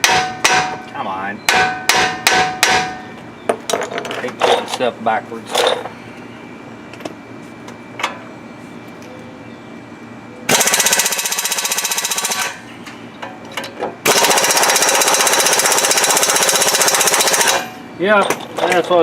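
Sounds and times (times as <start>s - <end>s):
impact wrench hammering on bolt: 0.0s - 0.9s, 1.5s - 3.0s.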